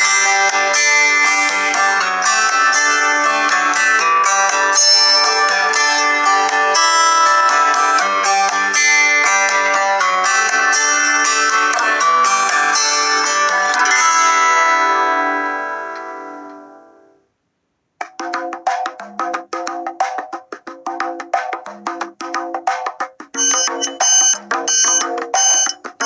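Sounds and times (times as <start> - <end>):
plucked guitar ringtone melody: 0.0 - 16.8, 23.4 - 26.0
rapid woodblock-like taps: 18.0 - 26.0.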